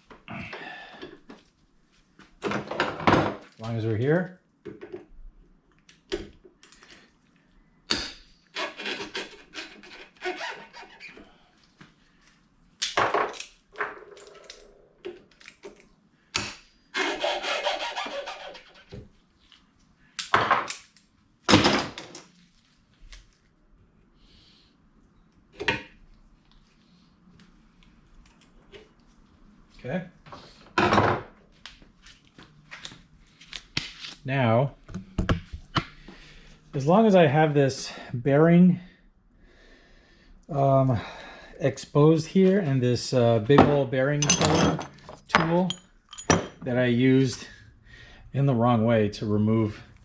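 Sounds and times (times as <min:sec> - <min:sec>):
metal tools knocking and clanking: 0:43.5 - 0:46.7.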